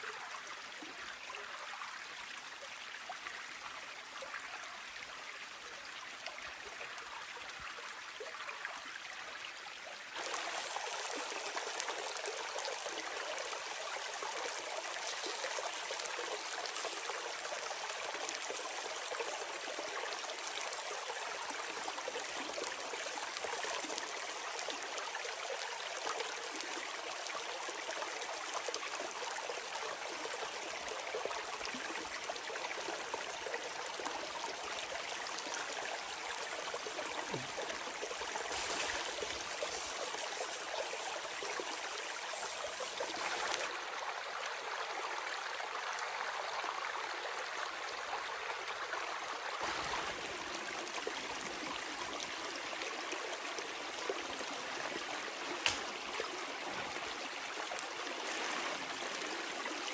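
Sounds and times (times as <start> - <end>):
running water rushing: 10.1 - 43.9, 49.6 - 59.9.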